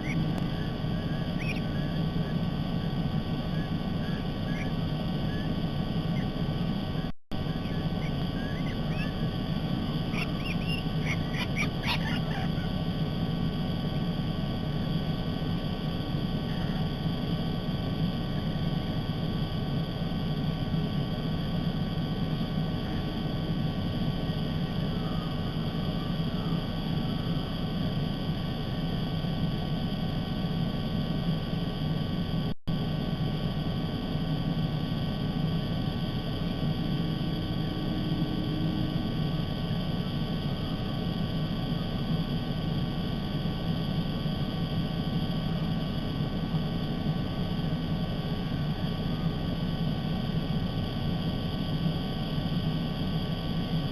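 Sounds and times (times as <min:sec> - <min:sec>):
faint electrical hum: 0:00.0 - 0:53.9
low outdoor rumble: 0:00.0 - 0:53.9
short high bird calls: 0:07.6 - 0:09.2, 0:10.1 - 0:12.7.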